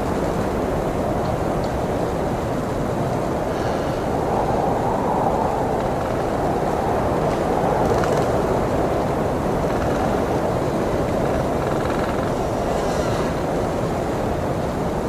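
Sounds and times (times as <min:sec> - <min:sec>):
snowstorm wind blowing: 0:00.0 - 0:15.0.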